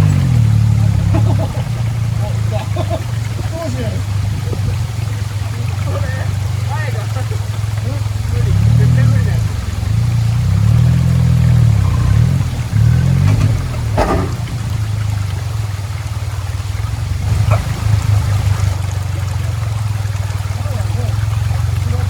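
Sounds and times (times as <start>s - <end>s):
small engine revving: 0.0s - 22.0s
water trickling: 0.0s - 22.0s
sharp knock: 13.3s - 14.7s.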